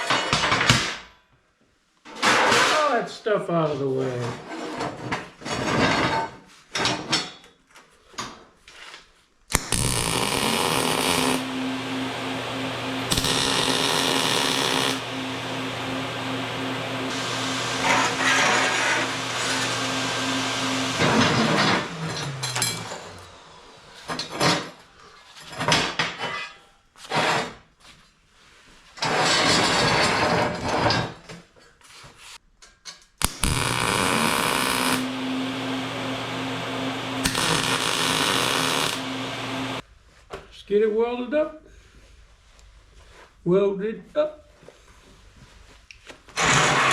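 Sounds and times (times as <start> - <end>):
electric power tool motor: 9.6 - 23.5, 33.3 - 39.8.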